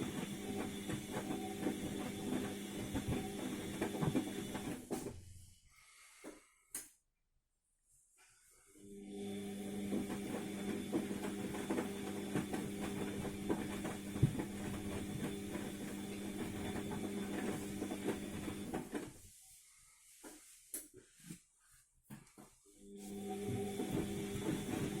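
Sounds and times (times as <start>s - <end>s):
washing machine motor hum: 0.0s - 5.5s, 8.8s - 19.4s, 22.7s - 25.0s.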